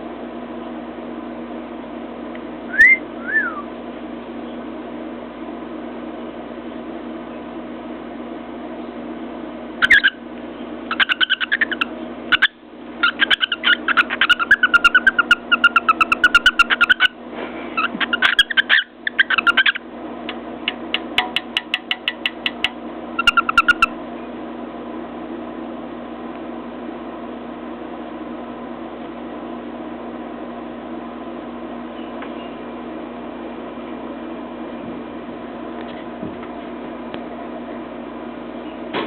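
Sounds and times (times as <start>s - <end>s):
cockatiel chattering: 9.8s - 10.2s, 10.9s - 17.2s, 17.8s - 19.8s, 21.0s - 24.0s.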